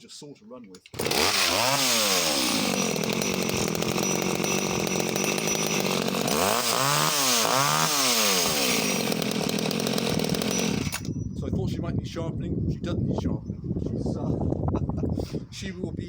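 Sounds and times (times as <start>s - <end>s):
chainsaw running and revving: 0.9s - 11.1s.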